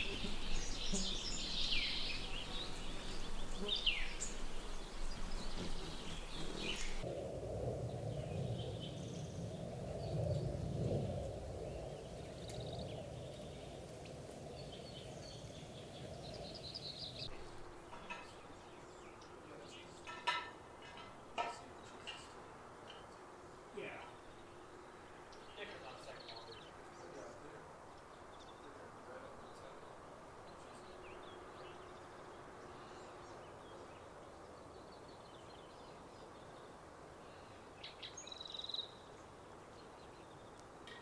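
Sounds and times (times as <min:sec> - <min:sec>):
wild birds calling: 0:00.0 - 0:07.1, 0:07.7 - 0:23.1
low rushing noise: 0:00.0 - 0:17.9.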